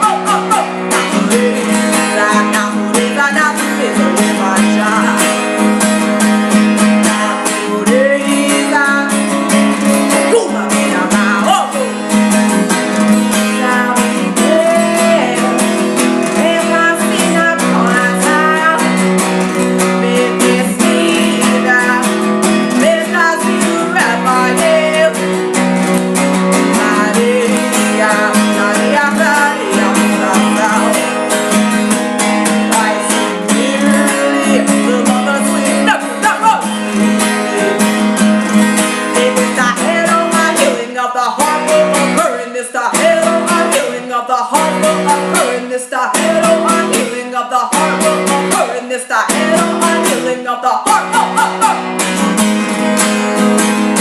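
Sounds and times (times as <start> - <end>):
acoustic guitar strumming: 0.0 - 54.0
person singing: 0.0 - 54.0.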